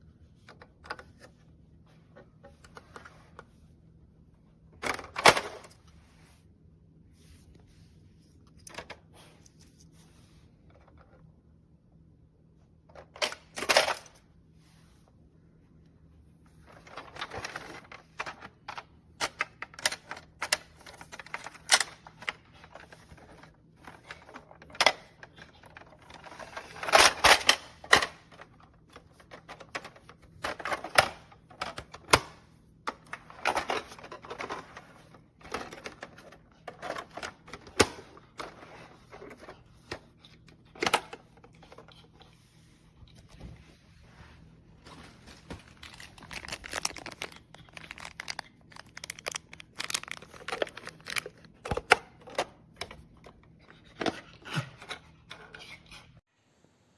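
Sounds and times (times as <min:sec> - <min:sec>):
plastic toy parts clicking and rattling: 0:16.7 - 0:28.5, 0:29.2 - 0:39.6, 0:45.7 - 0:55.8.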